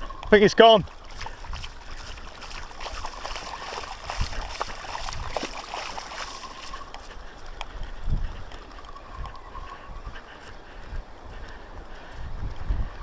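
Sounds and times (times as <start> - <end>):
sea water sloshing at shore: 0.8 - 7.3.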